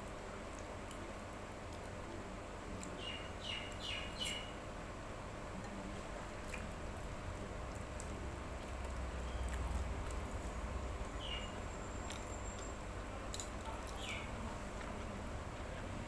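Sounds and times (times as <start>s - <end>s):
chewing noodles: 6.3s - 15.3s.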